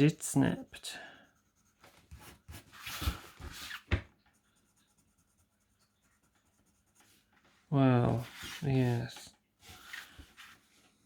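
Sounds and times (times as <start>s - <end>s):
pencil shading on paper: 0.6s - 3.0s, 4.2s - 7.4s.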